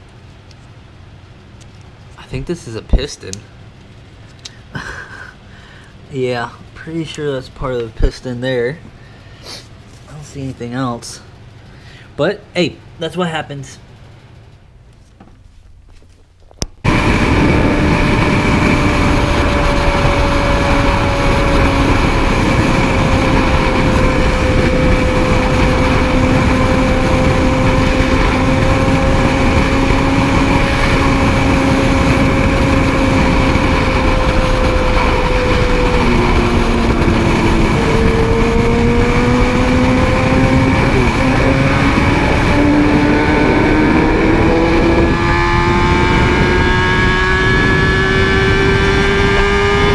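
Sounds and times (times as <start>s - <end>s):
wind noise: 16.5s - 49.9s
motorcycle engine at high revs: 16.8s - 49.9s.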